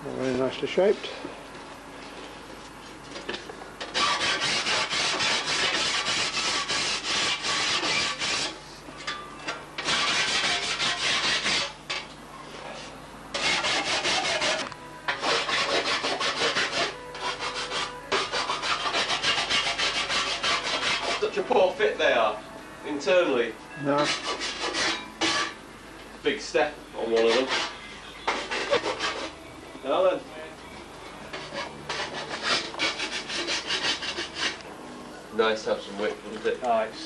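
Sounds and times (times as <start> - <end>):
hand file rasping on metal: 3.9 - 8.6, 9.8 - 11.8, 13.3 - 21.4, 24.0 - 25.6, 27.1 - 29.4, 31.3 - 34.6.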